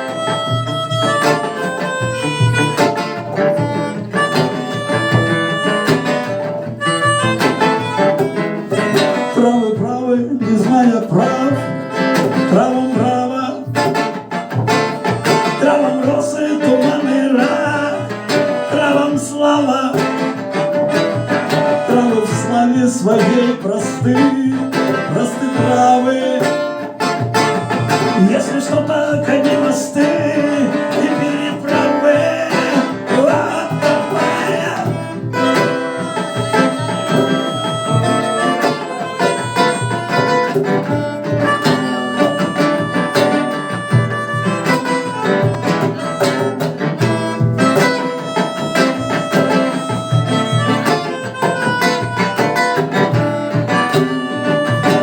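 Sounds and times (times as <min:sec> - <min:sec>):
live band with guitars: 0:00.0 - 0:55.0
wavering melody line: 0:33.4 - 0:46.6.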